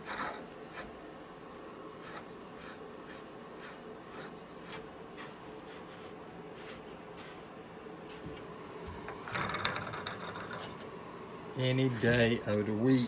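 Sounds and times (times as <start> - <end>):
faint steady hum: 0.0 - 13.0
wooden vise screw rubbing: 8.9 - 10.8.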